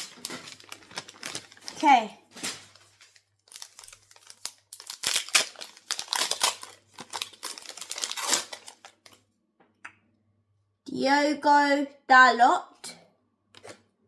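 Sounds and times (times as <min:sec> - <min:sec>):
wrapper crinkling and tearing: 0:00.0 - 0:09.2.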